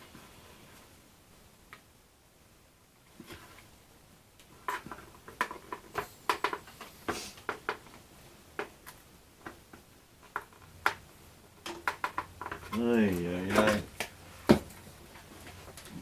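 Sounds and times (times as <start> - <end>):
small objects clicking and tapping: 4.4 - 15.9.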